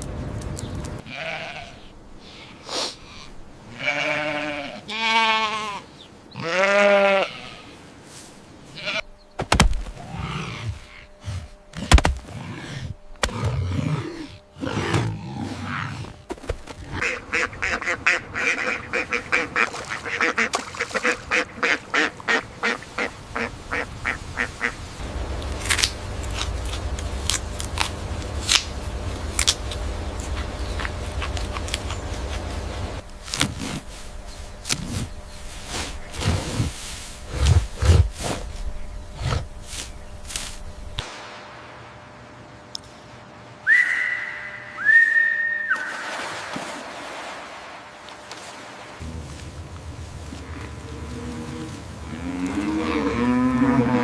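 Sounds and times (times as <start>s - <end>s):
ducks quacking: 16.8s - 25.0s
low steady rumble: 22.5s - 44.8s, 48.5s - 54.0s.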